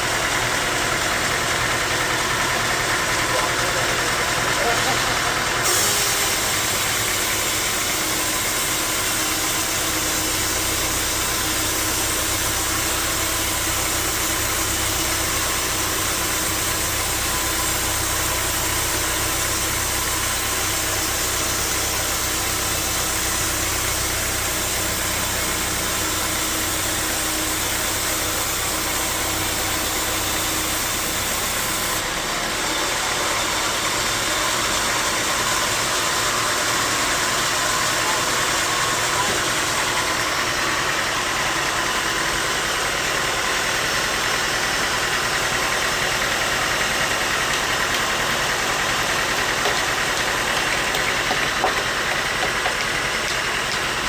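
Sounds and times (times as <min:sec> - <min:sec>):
sawmill machinery hum: 0:00.0 - 0:54.0.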